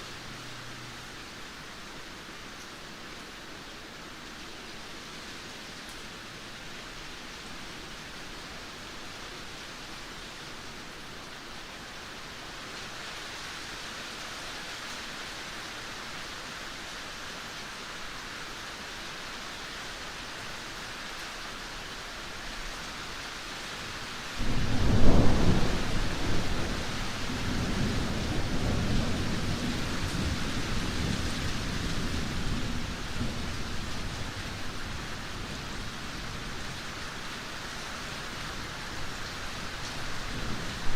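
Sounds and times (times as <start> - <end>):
steady rain hissing: 0.0 - 40.9
thunderclap rumbling: 24.4 - 29.8.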